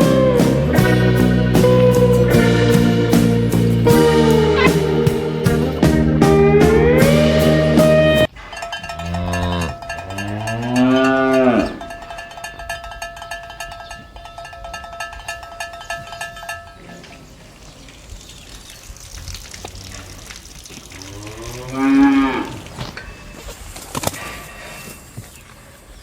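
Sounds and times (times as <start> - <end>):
cattle mooing: 3.9 - 5.6, 8.9 - 12.0, 20.9 - 23.0
steady ringing tones: 8.2 - 17.3.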